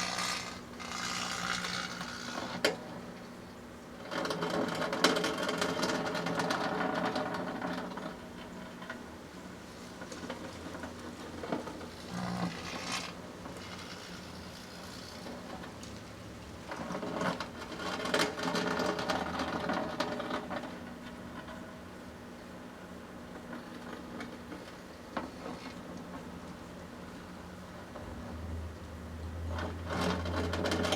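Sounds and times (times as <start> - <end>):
lamp crackling and popping: 0.0 - 2.8.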